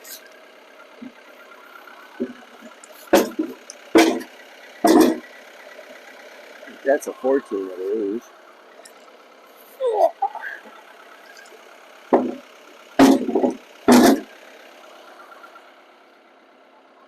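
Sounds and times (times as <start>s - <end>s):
diesel tractor idling: 0.0s - 17.0s
heavy knocks of timbers: 3.1s - 4.3s, 4.9s - 5.2s, 12.1s - 14.3s.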